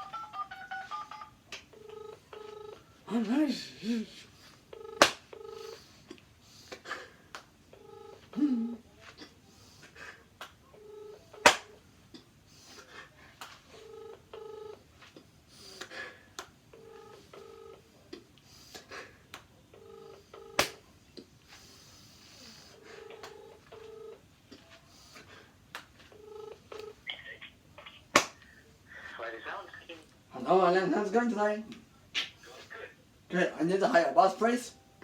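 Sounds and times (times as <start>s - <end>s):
telephone ringback tone: 0.0s - 3.0s, 4.7s - 5.9s, 7.8s - 8.8s, 10.8s - 11.5s, 13.7s - 14.9s, 16.7s - 17.9s, 19.8s - 20.6s, 22.2s - 24.2s, 26.0s - 27.1s.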